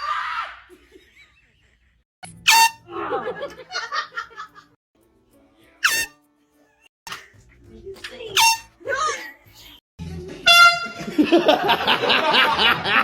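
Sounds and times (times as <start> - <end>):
air horn blasts: 2.5 - 2.8, 8.4 - 8.7, 10.4 - 11.0.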